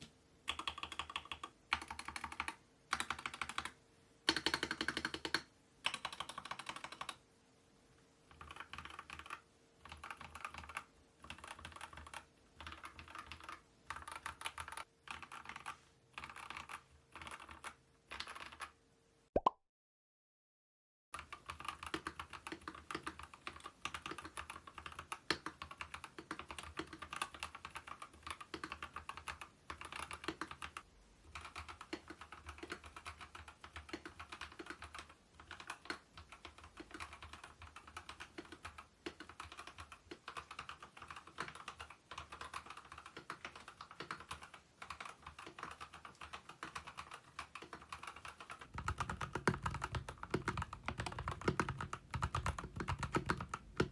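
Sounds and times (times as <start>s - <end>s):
mechanical keyboard typing clacks: 0.5s - 7.2s, 8.3s - 18.7s, 21.2s - 53.9s.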